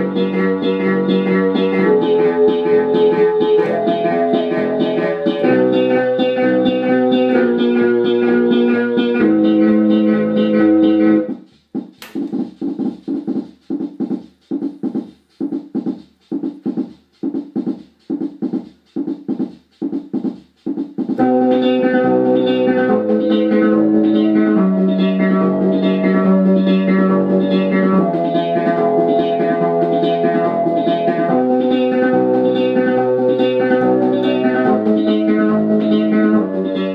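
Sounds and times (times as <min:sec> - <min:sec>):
electronic keyboard chords: 0:00.0 - 0:13.3, 0:21.2 - 0:36.9
short keyboard notes: 0:00.8 - 0:06.0.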